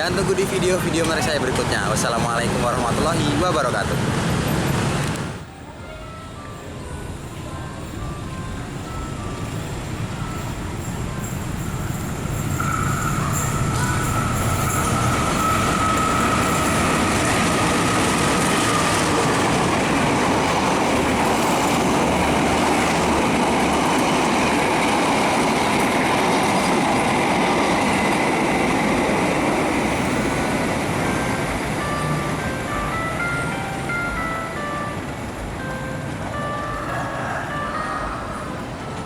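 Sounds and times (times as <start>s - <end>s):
train wheels on rails: 0.0s - 5.4s, 6.7s - 39.0s.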